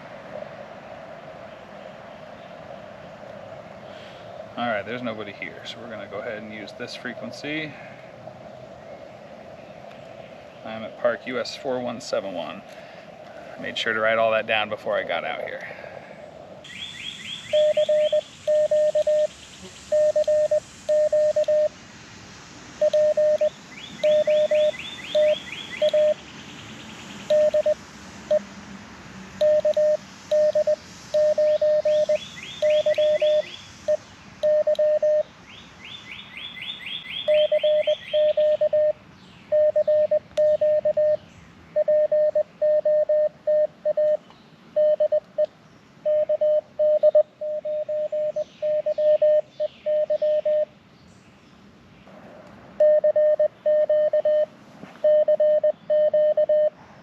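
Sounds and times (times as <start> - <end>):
bird trilling: 16.7 - 21.6, 22.8 - 26.2, 29.4 - 41.2, 46.0 - 50.6
morse code sidetone: 17.5 - 19.3, 19.9 - 21.7, 22.8 - 26.2, 27.3 - 28.4, 29.4 - 35.2, 37.3 - 41.2, 41.8 - 44.2, 44.8 - 50.7, 52.8 - 56.8.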